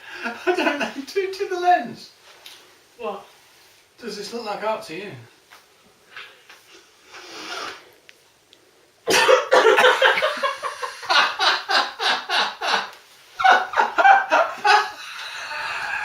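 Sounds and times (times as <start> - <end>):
person laughing hard: 9.1 - 16.0.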